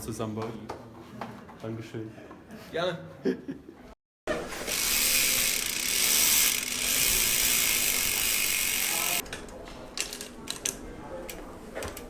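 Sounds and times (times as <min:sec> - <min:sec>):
bicycle freewheel ratcheting: 0:04.6 - 0:09.2.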